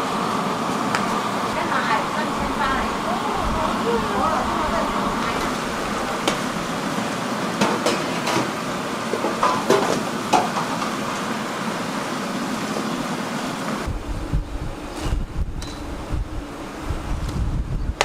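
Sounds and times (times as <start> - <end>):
steady mechanical noise: 0.0 - 18.0
wind rumble on microphone: 1.6 - 6.8, 13.8 - 18.0.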